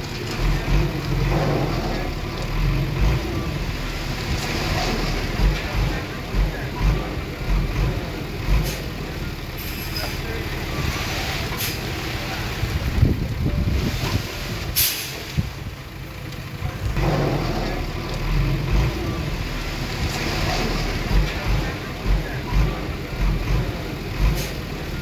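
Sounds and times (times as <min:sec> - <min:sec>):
diesel machinery rumbling: 0:00.0 - 0:25.0
short hisses: 0:14.8 - 0:15.4.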